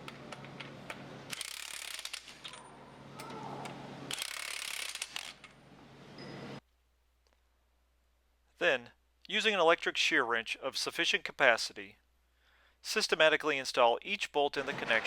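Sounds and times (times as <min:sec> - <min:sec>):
wrench rapid clicking: 0:01.3 - 0:02.5, 0:04.1 - 0:05.5.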